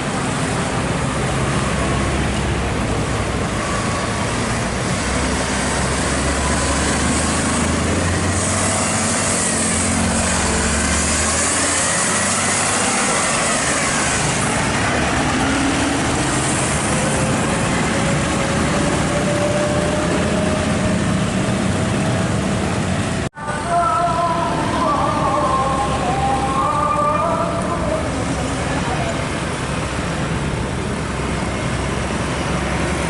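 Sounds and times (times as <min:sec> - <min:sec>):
vehicle engine pulling away: 0:00.0 - 0:23.3
heavy vehicle engine rumble: 0:00.0 - 0:33.0
road noise: 0:00.0 - 0:33.0.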